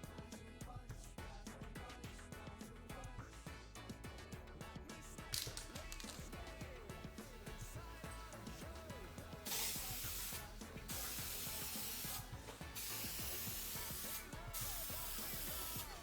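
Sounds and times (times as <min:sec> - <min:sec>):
aerosol can spraying: 0:05.4 - 0:16.0.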